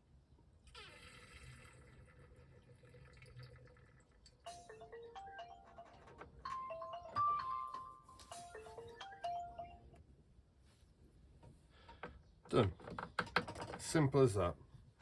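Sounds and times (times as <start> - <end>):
soft background music: 4.4 - 10.0
plucked chime-like melody: 4.5 - 10.0.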